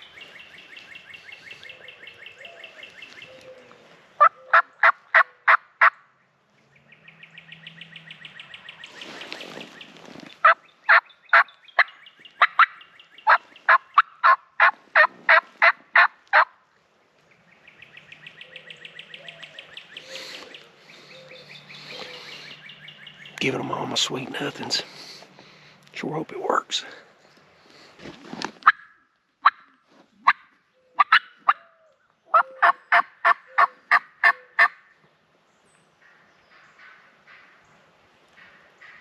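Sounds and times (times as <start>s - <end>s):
turkey call hen yelps: 4.2s - 5.9s, 12.4s - 16.5s, 31.0s - 34.8s.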